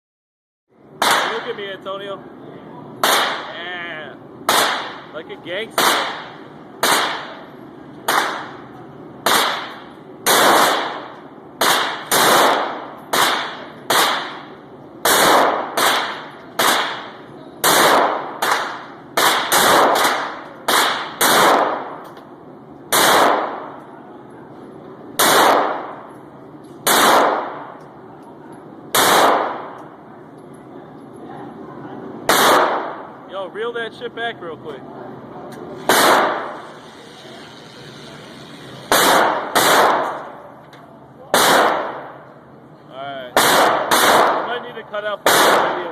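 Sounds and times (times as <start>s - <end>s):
pistol shots echoing: 1.0s - 1.6s, 3.0s - 3.6s, 4.5s - 5.1s, 5.8s - 7.4s, 8.0s - 22.0s, 22.9s - 23.8s, 25.2s - 26.1s, 26.8s - 27.8s, 28.9s - 29.9s, 32.3s - 33.2s, 35.9s - 36.6s, 38.9s - 40.4s, 41.3s - 42.3s, 43.3s - 45.9s.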